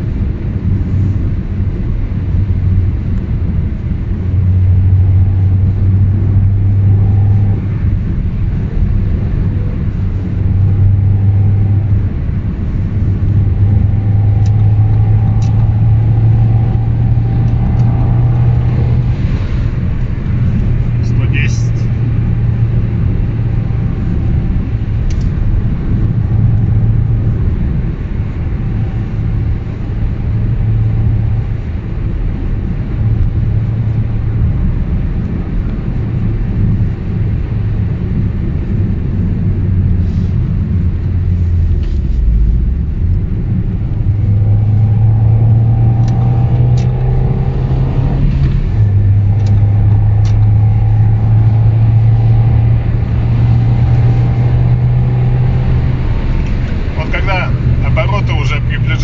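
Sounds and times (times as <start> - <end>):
car engine drone inside cabin: 0.0 - 59.0
road noise: 0.0 - 59.0.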